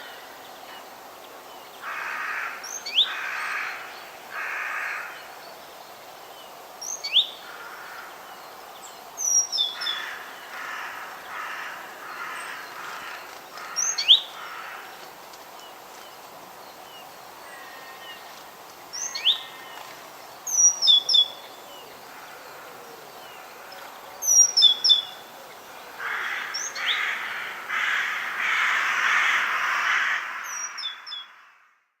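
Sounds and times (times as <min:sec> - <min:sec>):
crows cawing: 0:01.8 - 0:05.2, 0:07.4 - 0:08.2, 0:09.8 - 0:15.1, 0:25.9 - 0:31.8.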